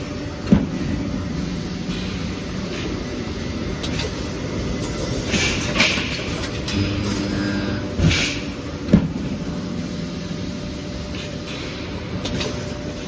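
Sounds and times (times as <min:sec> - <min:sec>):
welding machine rumbling: 0:01.2 - 0:13.0.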